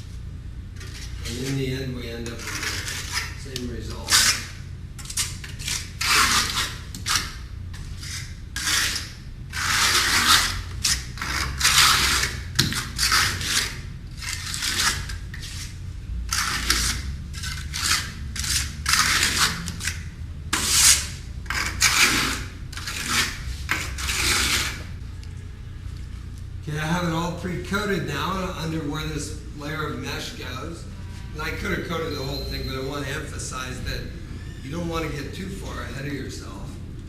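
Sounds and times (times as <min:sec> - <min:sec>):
tool scraping over board: 0:00.8 - 0:25.0.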